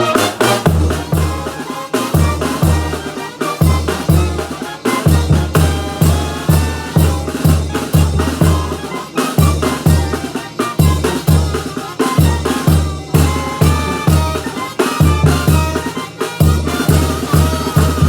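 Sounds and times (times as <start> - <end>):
low tuba notes: 0.0 - 1.4
brass band playing: 0.0 - 18.0
drums: 0.0 - 18.0.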